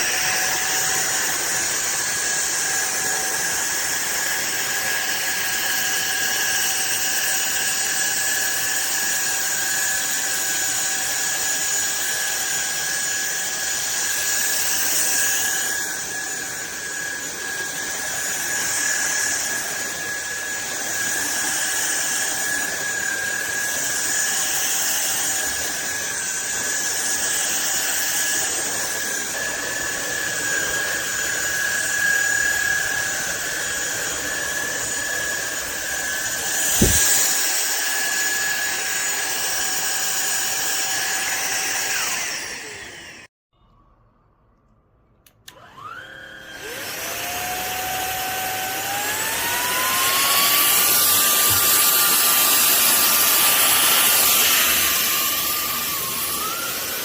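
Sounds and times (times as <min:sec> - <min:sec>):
vacuum cleaner motor whining: 0:00.0 - 0:43.3, 0:45.5 - 0:57.0.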